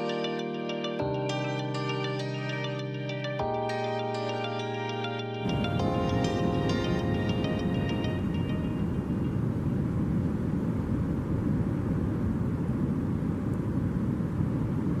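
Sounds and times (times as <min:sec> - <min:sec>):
low rumbling noise: 0:05.4 - 0:15.0.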